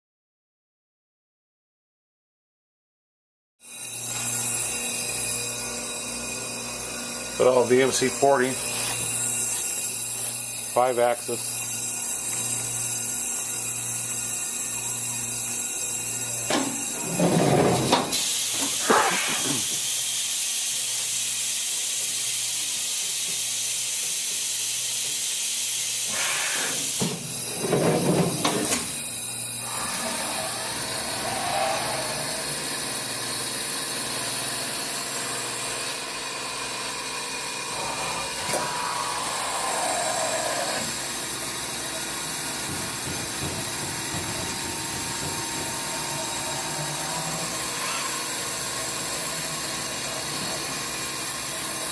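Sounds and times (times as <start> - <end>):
mill mechanical running noise: 3.8 - 51.9
mill loud hiss: 18.0 - 20.8, 25.2 - 27.2
mechanical knocks: 42.6 - 46.2.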